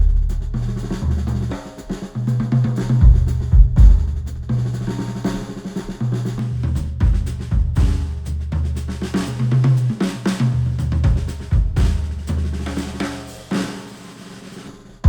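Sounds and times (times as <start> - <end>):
low bass line: 0.0 - 1.3
drum kit playing: 0.0 - 15.0.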